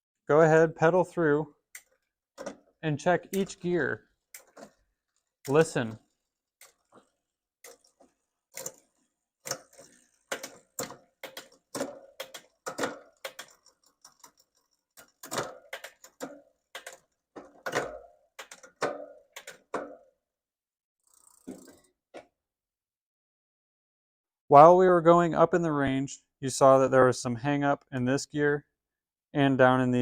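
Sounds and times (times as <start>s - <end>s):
bicycle derailleur clicking: 1.6s - 2.6s, 4.1s - 20.1s, 21.0s - 22.0s
bicycle chain clatter: 4.2s - 20.1s, 21.0s - 22.0s.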